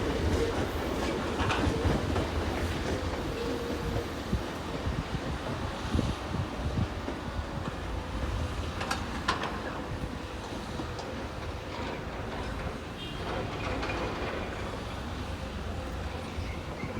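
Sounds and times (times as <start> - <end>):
train wheels rumbling on rail: 0.0 - 16.9.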